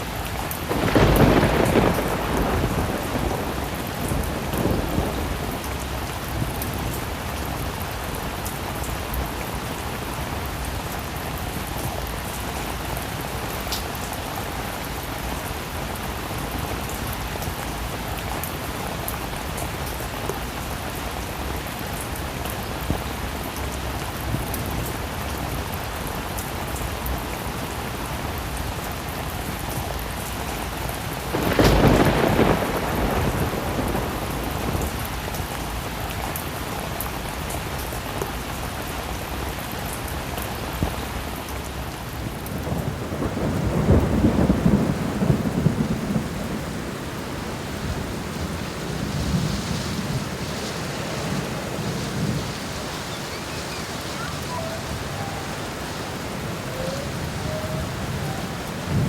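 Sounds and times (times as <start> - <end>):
heavy rain pouring: 0.0 - 59.0
thunder rumbling: 0.1 - 8.4, 31.3 - 35.2, 42.0 - 59.0.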